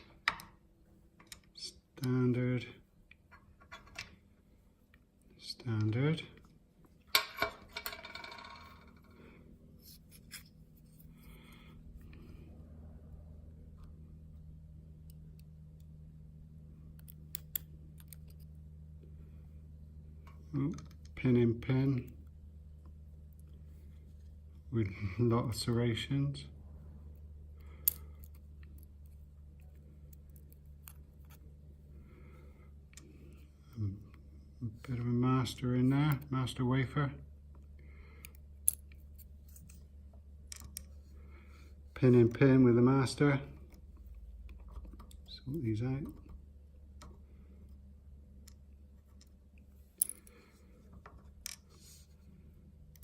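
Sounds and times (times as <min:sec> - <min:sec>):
steady low hum: 0:00.0 - 0:53.0
light clicks of lock pins and tools: 0:01.2 - 0:02.2, 0:16.8 - 0:18.6, 0:27.6 - 0:31.5, 0:37.5 - 0:41.1, 0:48.4 - 0:51.8
metal lock pins clicking: 0:17.0 - 0:18.5.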